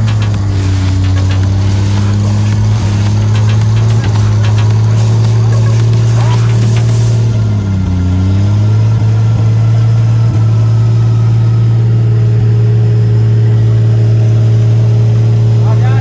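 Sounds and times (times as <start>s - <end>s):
off-road vehicle engine under load: 0.0s - 16.0s.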